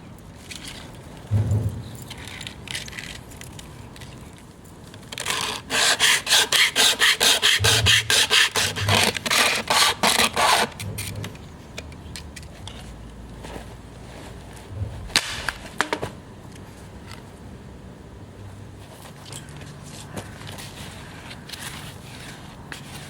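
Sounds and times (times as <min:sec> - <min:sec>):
rhythmic rasping strokes on wood: 0:05.3 - 0:11.1.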